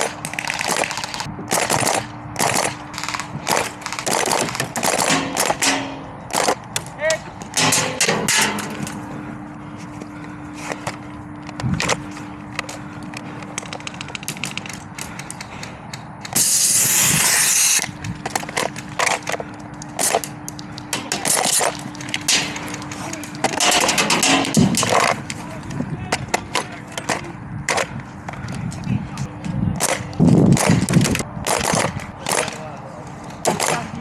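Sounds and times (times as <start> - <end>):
airsoft guns firing: 0.0 - 6.6, 7.6 - 9.0, 20.9 - 25.2, 29.8 - 32.6, 33.4 - 33.9
steady low hum: 0.0 - 34.0
loud hiss: 16.4 - 17.8.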